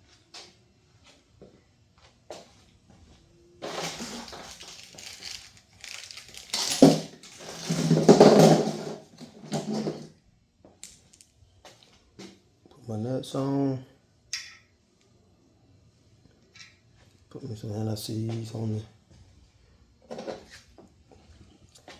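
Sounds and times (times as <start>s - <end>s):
metal scraping: 3.6s - 10.0s.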